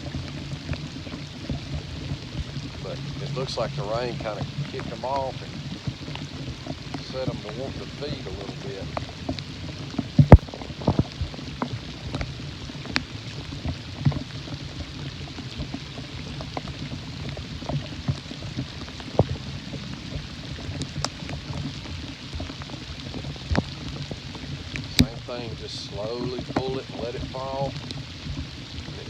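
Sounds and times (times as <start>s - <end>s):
rain falling steadily: 0.0s - 29.0s.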